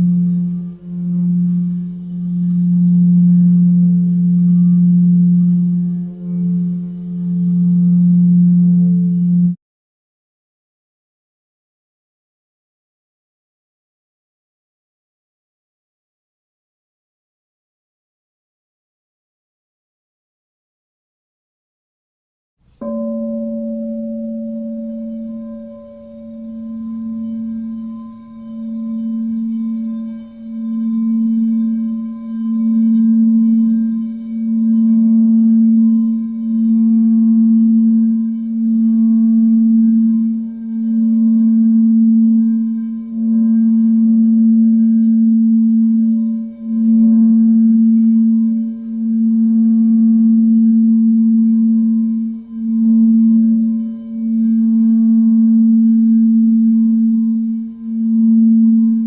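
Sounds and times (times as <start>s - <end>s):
singing bowl low tone: 0.0s - 9.6s, 22.7s - 59.0s.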